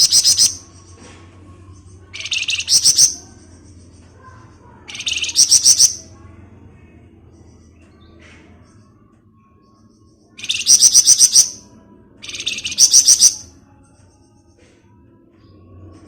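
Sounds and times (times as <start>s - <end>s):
songbird rapid chattering: 0.0s - 0.6s, 2.1s - 4.1s, 4.9s - 6.0s, 10.4s - 11.6s, 12.2s - 13.5s.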